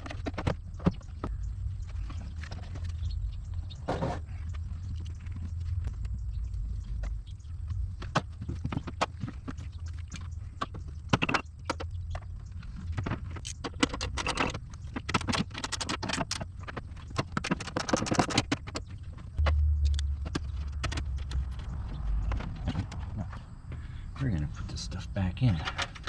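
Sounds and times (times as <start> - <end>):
steady low hum: 0.0 - 13.7, 18.9 - 26.0
tools and metal parts clicking: 11.1 - 19.0, 25.6 - 26.0.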